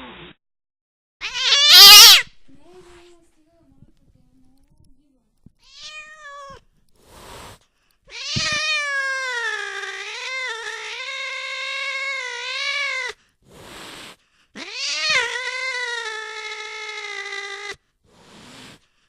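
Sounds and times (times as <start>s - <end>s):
cat yowling: 1.2s - 2.3s, 5.6s - 6.6s, 8.1s - 13.2s, 14.6s - 17.8s.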